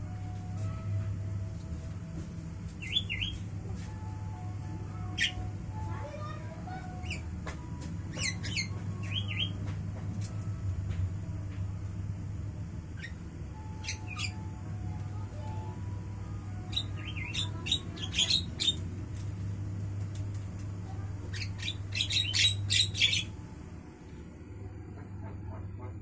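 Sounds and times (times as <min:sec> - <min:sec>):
steady low hum: 0:00.0 - 0:26.0
bird harsh chattering calls: 0:16.8 - 0:18.8, 0:21.3 - 0:23.3.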